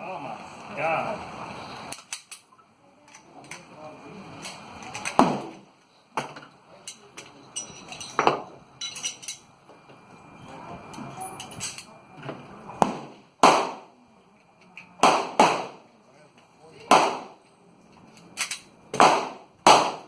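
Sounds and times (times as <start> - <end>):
metallic gun handling clicks: 1.9 - 2.5, 18.0 - 18.7
gunshots: 12.8 - 13.9, 15.0 - 15.8, 16.9 - 17.4, 19.0 - 20.0.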